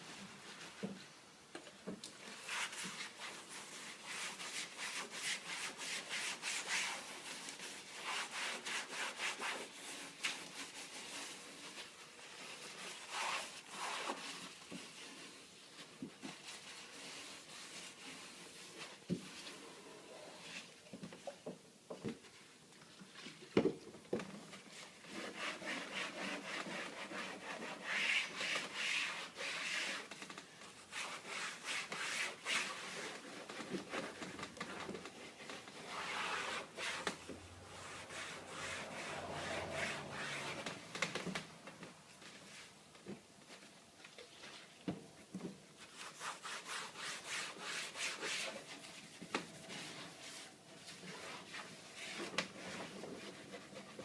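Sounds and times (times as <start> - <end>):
paper towel wiping: 2.2 - 20.8, 24.7 - 30.2, 30.8 - 41.1, 45.7 - 54.0.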